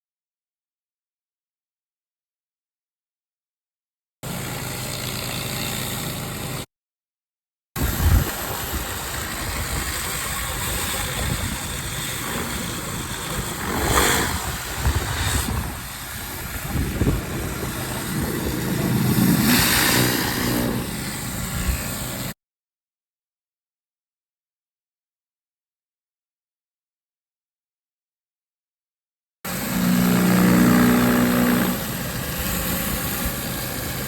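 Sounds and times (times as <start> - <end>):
pressure washer engine drone: 4.2 - 6.6, 7.8 - 22.3, 29.5 - 34.0
high-pressure water spray hissing: 7.8 - 22.3, 29.5 - 34.0.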